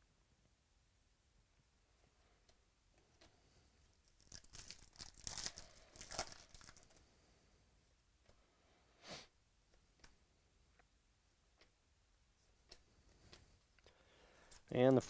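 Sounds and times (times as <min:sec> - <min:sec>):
wrapper tearing and crinkling: 0:04.1 - 0:07.0.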